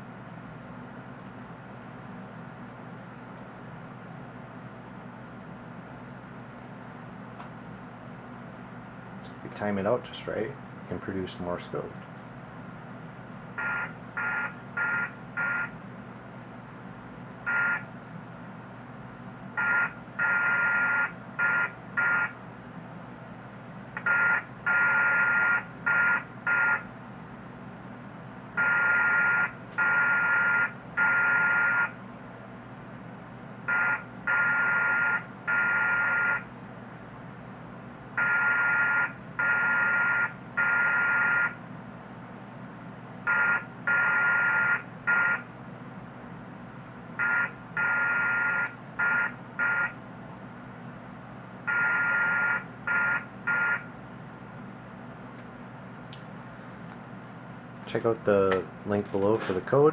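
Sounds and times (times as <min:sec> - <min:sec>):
buzzy morse code tone: 0:13.6 - 0:15.7, 0:17.5 - 0:17.8, 0:33.7 - 0:36.4, 0:38.2 - 0:41.6, 0:43.3 - 0:45.4, 0:47.2 - 0:50.0, 0:51.7 - 0:53.9.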